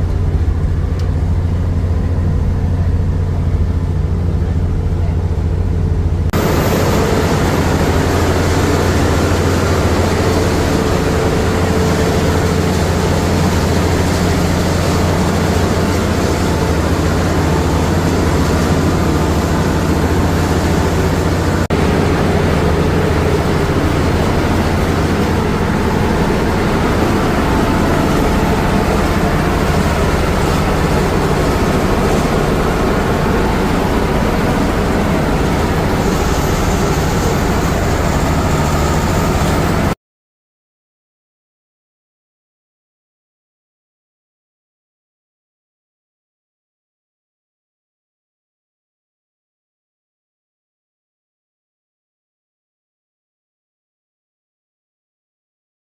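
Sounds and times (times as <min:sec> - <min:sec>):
motorboat engine running: 0:00.0 - 0:39.9
rushing water: 0:00.0 - 0:40.0.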